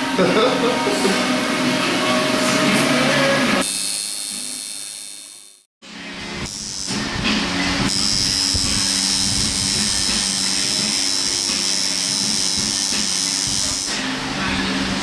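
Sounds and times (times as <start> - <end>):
tattoo machine buzzing: 3.6 - 5.7, 6.4 - 14.0.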